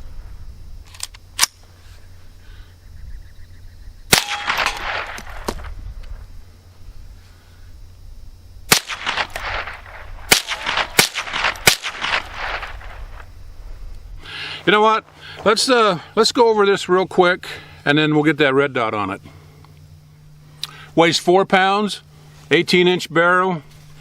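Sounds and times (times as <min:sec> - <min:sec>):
rifle gunshots echoing: 0:04.1 - 0:05.7, 0:08.7 - 0:13.2.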